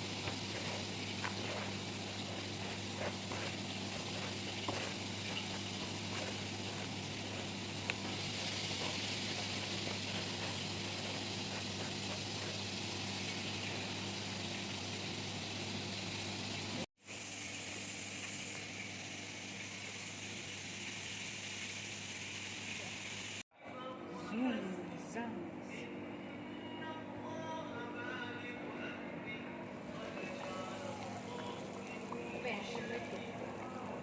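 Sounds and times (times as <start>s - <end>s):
steady hiss: 0.0s - 23.4s
low kitchen hum: 0.0s - 34.0s.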